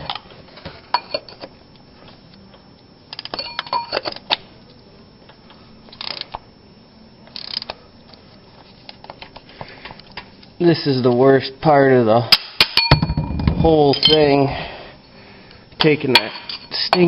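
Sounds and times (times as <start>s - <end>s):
metal tools clicking and clinking: 3.1s - 4.2s, 13.8s - 14.5s.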